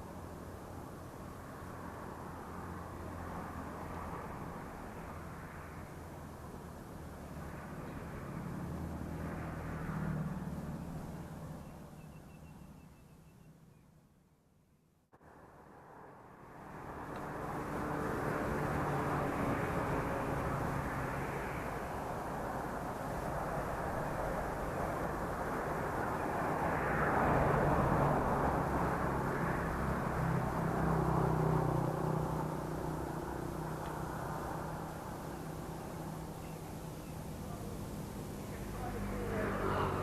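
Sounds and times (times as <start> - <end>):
passing motor engine drone: 15.7 - 40.0.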